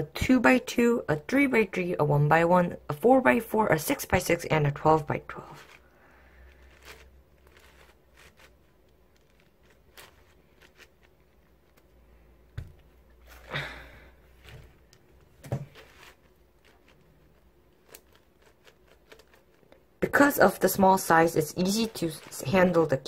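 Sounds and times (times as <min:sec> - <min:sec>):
puzzle cube clicking and turning: 0:05.5 - 0:12.0, 0:14.4 - 0:19.9.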